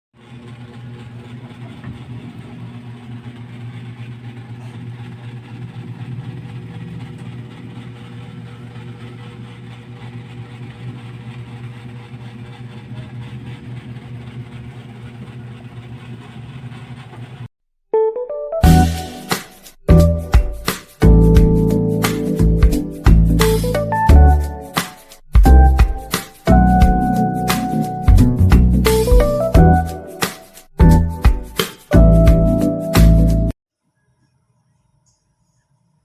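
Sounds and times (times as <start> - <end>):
low mechanical hum: 0.2 - 17.5.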